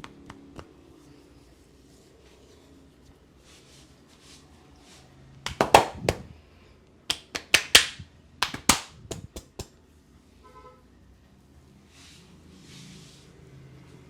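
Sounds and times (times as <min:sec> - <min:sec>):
hands slapping during massage: 0:05.5 - 0:06.3, 0:07.1 - 0:09.7.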